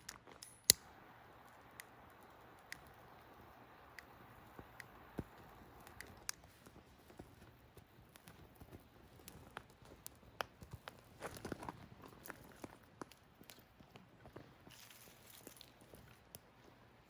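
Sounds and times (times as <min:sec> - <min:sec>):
faint hiss: 0:00.0 - 0:11.2
campfire crackling: 0:00.0 - 0:17.0.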